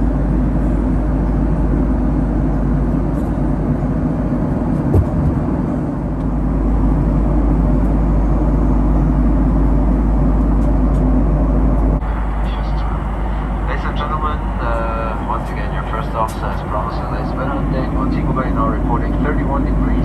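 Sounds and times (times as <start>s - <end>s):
airliner engine rumble in cabin: 0.0s - 20.0s
short knock: 4.9s - 5.6s.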